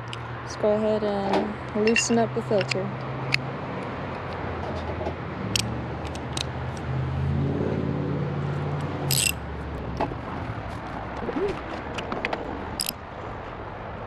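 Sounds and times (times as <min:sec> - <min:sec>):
engine humming: 0:00.0 - 0:14.0
hand tools clinking: 0:01.8 - 0:02.8, 0:09.1 - 0:09.4
sharp metallic clicks: 0:05.5 - 0:06.9, 0:09.1 - 0:09.4.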